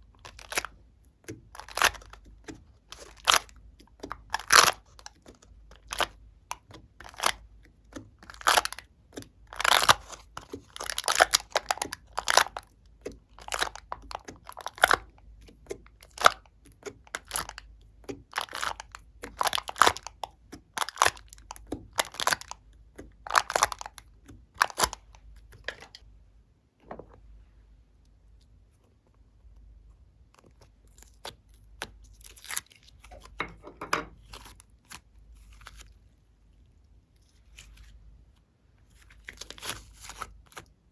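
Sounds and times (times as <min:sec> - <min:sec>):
slime crackling and popping: 0:01.6 - 0:02.3, 0:02.9 - 0:07.4, 0:08.2 - 0:08.9, 0:09.5 - 0:22.6, 0:23.2 - 0:24.0, 0:24.6 - 0:26.0.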